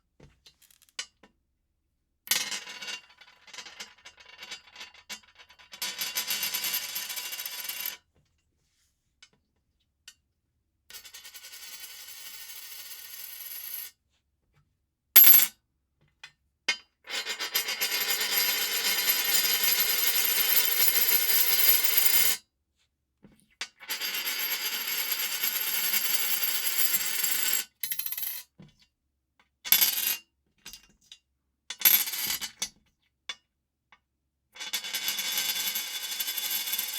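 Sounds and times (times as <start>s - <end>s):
coin spinning on glass: 11.8s - 13.9s, 15.2s - 15.5s, 17.4s - 22.4s, 23.9s - 28.4s, 34.9s - 36.9s.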